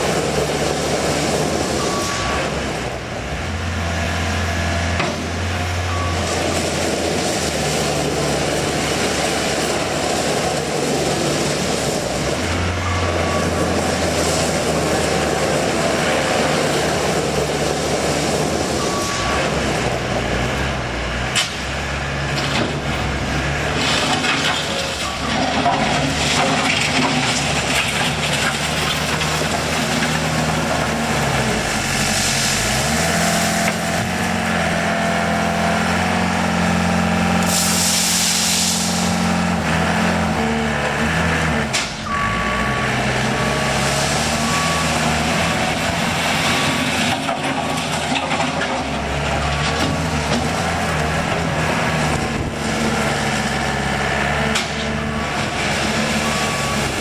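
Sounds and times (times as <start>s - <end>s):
loader engine revving: 0.0s - 57.0s
reversing alarm beeping: 5.8s - 6.6s, 12.7s - 14.4s, 25.0s - 25.6s, 42.0s - 47.1s, 55.0s - 57.0s
loud hiss: 37.5s - 39.1s.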